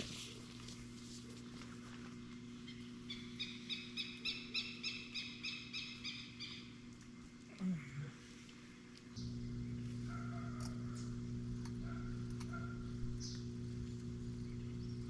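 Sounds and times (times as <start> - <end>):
bird calling sharp notes: 2.7 - 6.8.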